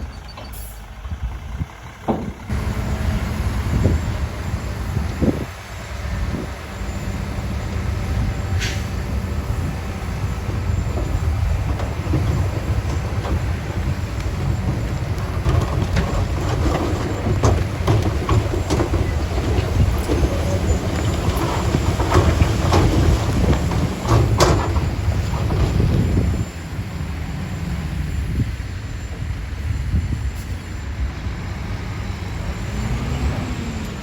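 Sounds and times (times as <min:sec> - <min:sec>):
diesel engine low rumble: 0:00.0 - 0:34.0
clattering and crunching: 0:10.3 - 0:26.4.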